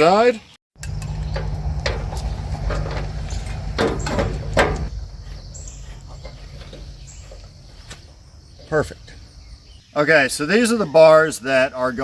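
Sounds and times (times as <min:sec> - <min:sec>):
low rumble: 0:00.8 - 0:08.4
creaking scrapes: 0:00.8 - 0:08.8
crickets chirping: 0:00.8 - 0:12.0.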